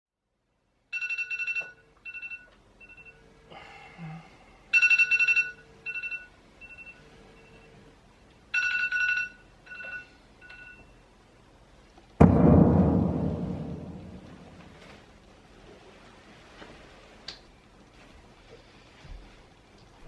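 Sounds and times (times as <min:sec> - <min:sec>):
old telephone ringing: 0:00.9 - 0:03.2, 0:04.7 - 0:07.6, 0:08.5 - 0:10.8.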